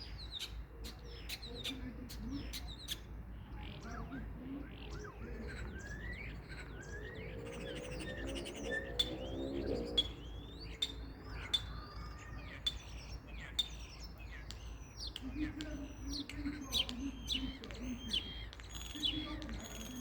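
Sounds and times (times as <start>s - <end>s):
starling singing: 0.0s - 20.0s.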